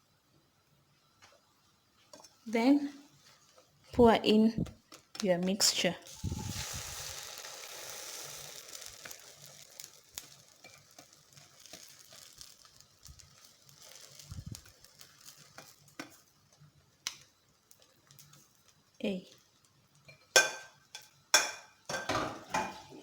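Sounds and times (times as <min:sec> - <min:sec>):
oil ticks and pops: 0:04.6 - 0:22.6
egg sizzling in frying pan: 0:04.7 - 0:22.9.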